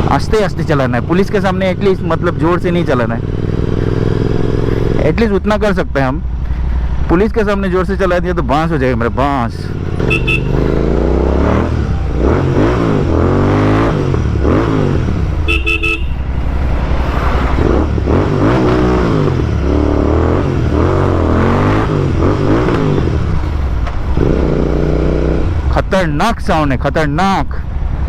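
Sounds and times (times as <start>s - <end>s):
motorcycle engine revving: 0.0s - 26.0s
vehicle horn honking: 10.0s - 10.8s, 15.4s - 16.3s.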